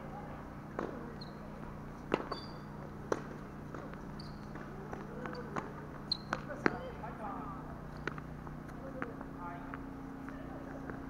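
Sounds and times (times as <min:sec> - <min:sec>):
tennis ball hit and bouncing: 0:00.7 - 0:06.9.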